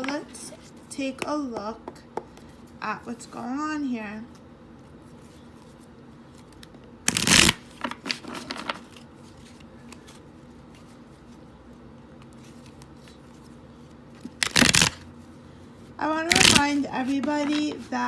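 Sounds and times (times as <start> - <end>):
cards being shuffled: 5.1 - 11.4, 12.2 - 15.0, 16.2 - 18.0.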